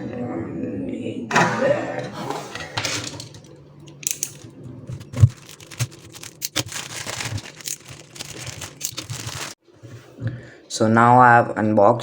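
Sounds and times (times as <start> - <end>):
plastic wrapping crinkling and tearing: 5.0 - 9.6.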